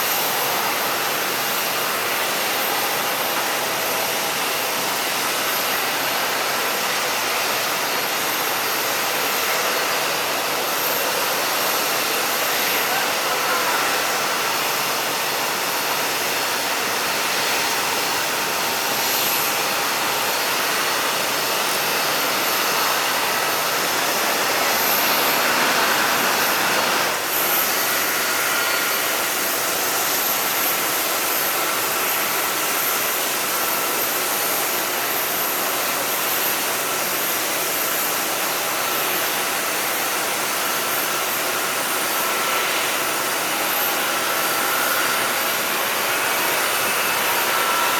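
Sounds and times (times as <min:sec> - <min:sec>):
jet engines running: 0:00.0 - 0:35.1.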